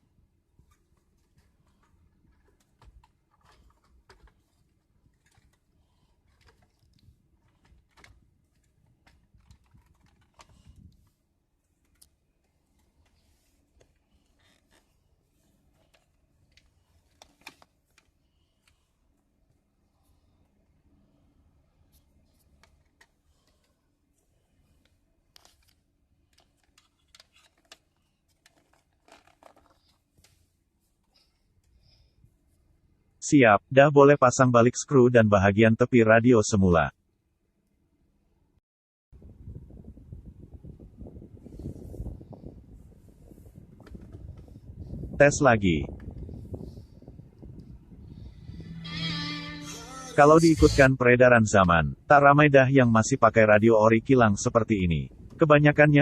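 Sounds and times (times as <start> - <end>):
faint clicks and wire rustling: 0.6 - 19.6, 21.9 - 32.0.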